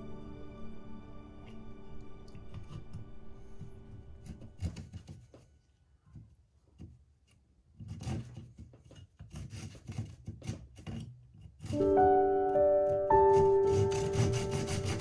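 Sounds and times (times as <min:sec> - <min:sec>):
saw cutting wood: 0:11.6 - 0:15.0.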